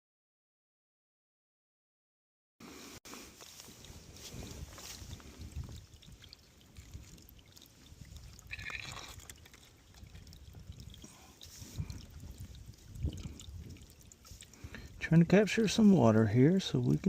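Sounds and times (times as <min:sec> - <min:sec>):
water trickling: 0:03.4 - 0:17.0.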